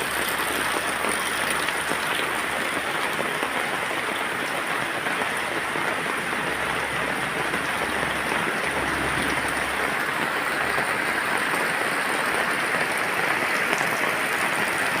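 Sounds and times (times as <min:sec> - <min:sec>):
steady rain falling: 0:00.0 - 0:15.0.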